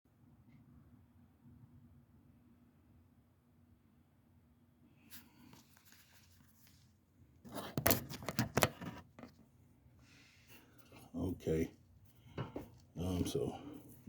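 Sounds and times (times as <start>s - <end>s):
faint handling scraping: 5.1s - 14.0s.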